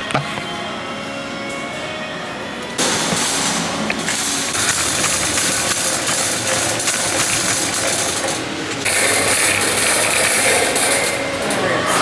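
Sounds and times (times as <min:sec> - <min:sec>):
metal shopping cart rattling: 0:02.8 - 0:12.0.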